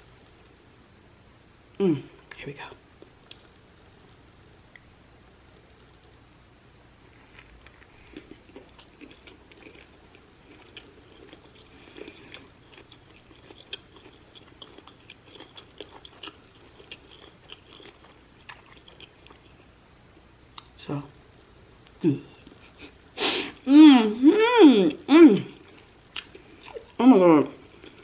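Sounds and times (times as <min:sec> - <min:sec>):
person chewing wet and crunchy: 0:07.2 - 0:19.6, 0:25.5 - 0:27.0.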